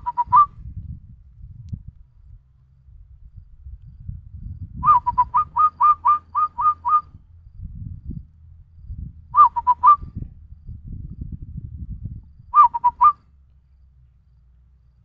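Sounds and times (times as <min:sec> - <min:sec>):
person whistling dove call: 0:00.0 - 0:00.5, 0:04.8 - 0:07.1, 0:09.4 - 0:10.0, 0:12.6 - 0:13.2.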